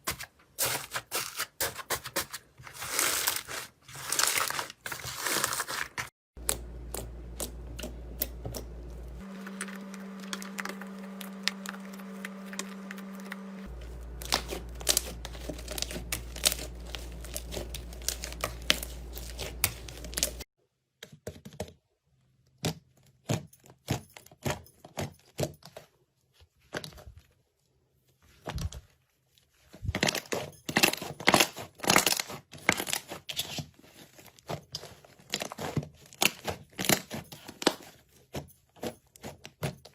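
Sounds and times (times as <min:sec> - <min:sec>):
steady low hum: 0:06.4 - 0:20.4
slime crackling and popping: 0:13.8 - 0:20.4.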